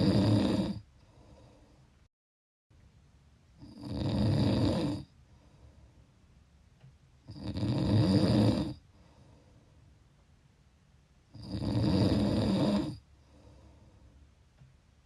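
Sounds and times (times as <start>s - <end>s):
person snoring: 0.0s - 1.6s, 3.6s - 5.1s, 7.3s - 8.8s, 11.3s - 13.7s
quiet breathing: 0.0s - 2.1s, 4.5s - 6.4s, 7.2s - 10.2s, 11.3s - 14.7s.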